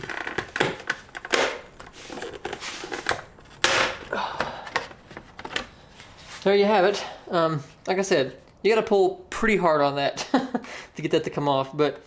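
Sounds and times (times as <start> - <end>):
loud plastic crack: 0.0 - 4.1
plastic clips creaking and clicking: 0.0 - 5.7.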